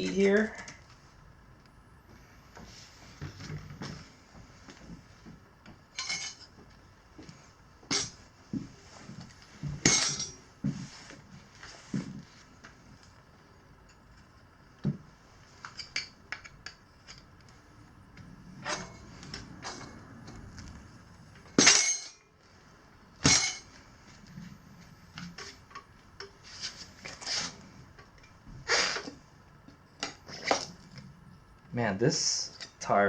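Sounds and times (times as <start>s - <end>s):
tire levers clinking and scraping: 9.8s - 10.4s, 18.5s - 20.7s, 21.4s - 22.3s, 23.2s - 23.8s.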